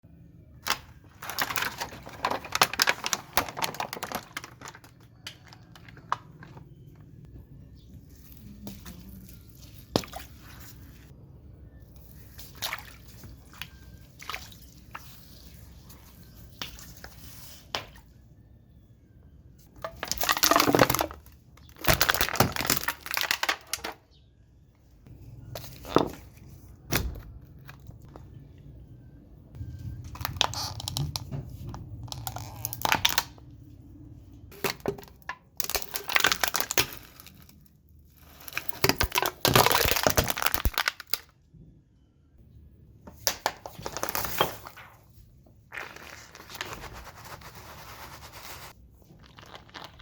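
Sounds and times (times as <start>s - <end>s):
objects crunching under car tyre: 0.6s - 7.2s, 19.8s - 24.0s, 34.5s - 41.2s.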